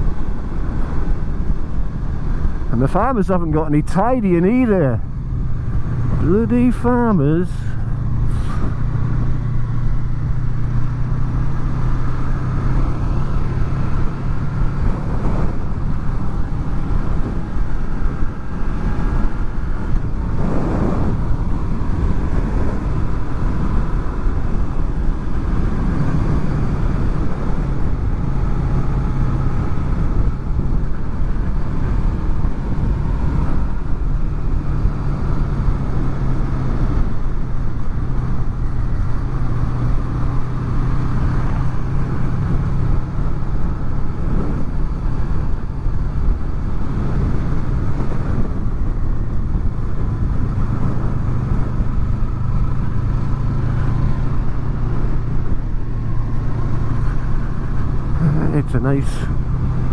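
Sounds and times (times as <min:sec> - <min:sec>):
motorcycle engine running: 0:04.5 - 0:58.6
wind rush: 0:12.8 - 0:28.2.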